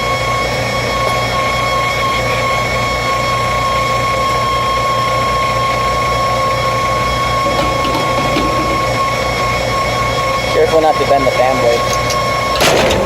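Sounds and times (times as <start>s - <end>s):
high-pitched machine whine: 0.0s - 13.0s
machine low hum: 0.0s - 13.0s.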